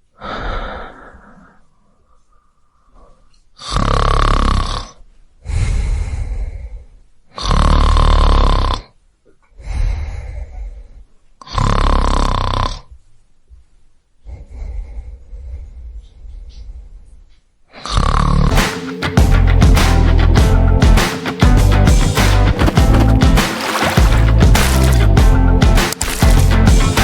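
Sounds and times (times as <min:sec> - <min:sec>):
breathing: 0:00.2 - 0:03.9, 0:05.4 - 0:07.7, 0:09.4 - 0:11.7, 0:14.2 - 0:18.0
man snoring: 0:03.6 - 0:05.0, 0:07.4 - 0:08.9, 0:11.4 - 0:12.9, 0:17.9 - 0:18.5.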